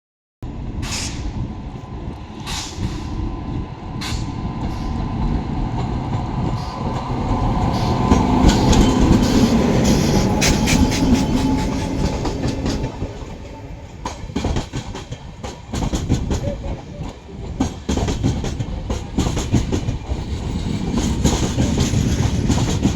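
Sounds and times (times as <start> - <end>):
train rumble: 0.4 - 22.9
wheel clatter over rail joints: 5.7 - 22.9.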